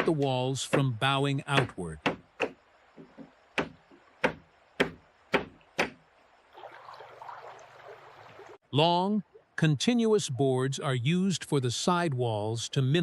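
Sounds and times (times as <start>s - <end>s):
sharp knocks on wood: 0.0s - 0.9s, 1.5s - 6.0s.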